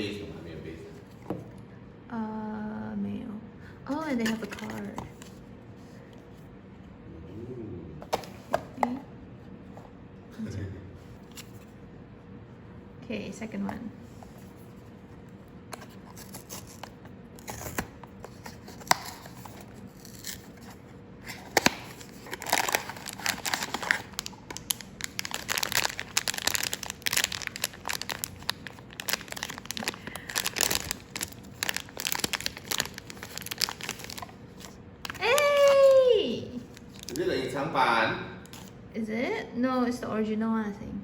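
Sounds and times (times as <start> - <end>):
packaging crinkling and tearing: 15.8 - 35.8, 36.6 - 37.3.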